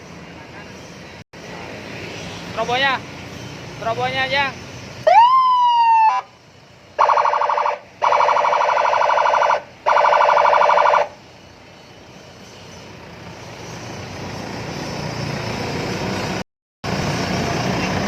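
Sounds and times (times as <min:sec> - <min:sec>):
police siren blasts: 0:05.1 - 0:06.4, 0:07.0 - 0:11.2.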